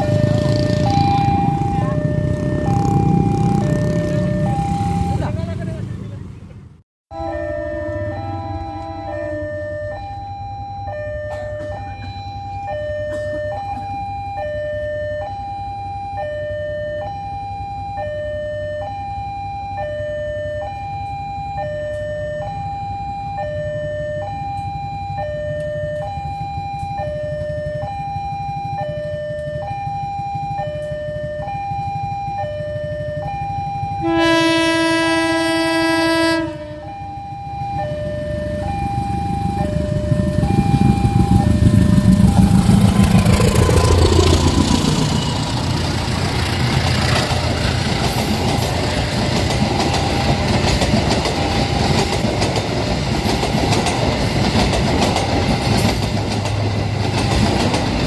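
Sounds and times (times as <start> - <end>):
two-tone electronic warning alarm: 0.0 - 5.4, 7.1 - 58.0
locomotive air horn blast: 7.1 - 9.8, 34.0 - 37.2.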